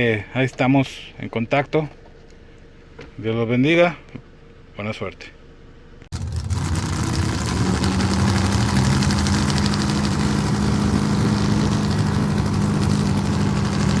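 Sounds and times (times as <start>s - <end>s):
engine idling: 6.1s - 14.0s.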